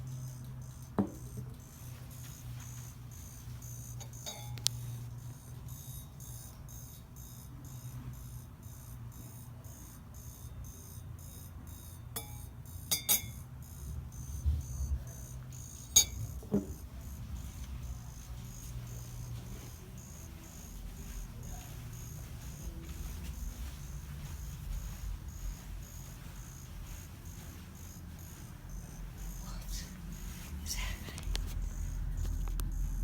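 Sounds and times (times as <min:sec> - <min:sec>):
ceramic cup chirping ticks: 0:02.2 - 0:05.0, 0:12.2 - 0:13.8, 0:15.4 - 0:16.7.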